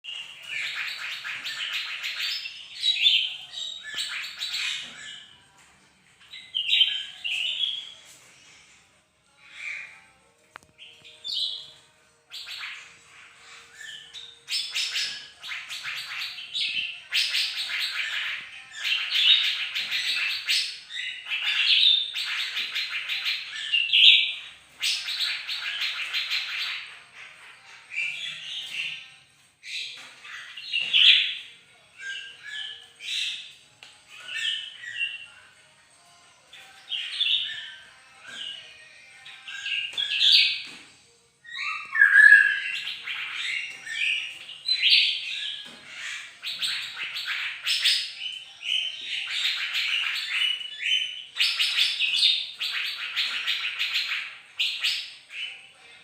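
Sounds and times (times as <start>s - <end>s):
songbird trilling song: 41.5s - 45.7s.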